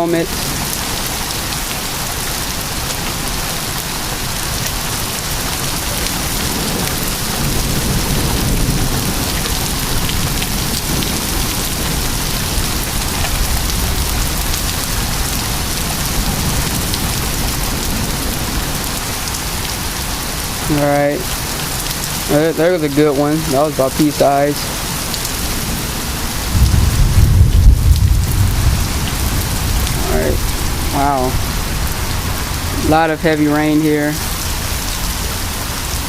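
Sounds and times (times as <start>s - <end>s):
heavy rain hissing: 0.0s - 36.0s
hailstones ticking: 0.3s - 36.0s
low rumble: 26.3s - 32.9s.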